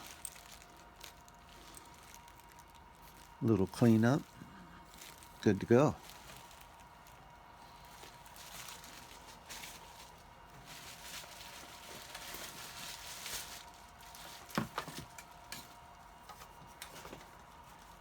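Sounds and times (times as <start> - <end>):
packing rustling: 0.0 - 4.3, 4.9 - 15.7
faint steady hum: 0.0 - 18.0.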